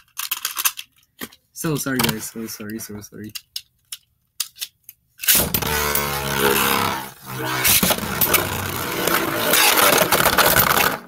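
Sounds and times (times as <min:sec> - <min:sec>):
spinning tops whirring and scraping: 0:05.2 - 0:11.0
pitched whine: 0:05.3 - 0:11.0.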